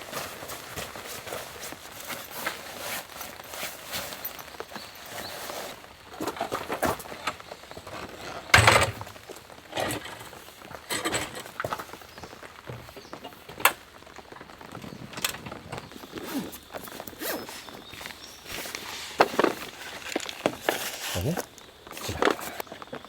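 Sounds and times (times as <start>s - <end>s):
knocks and clatters: 8.5s - 9.2s.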